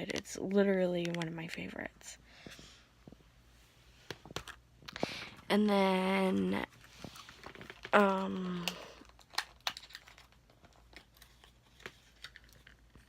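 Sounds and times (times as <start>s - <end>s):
plastic wrapping crinkling: 6.7s - 13.0s.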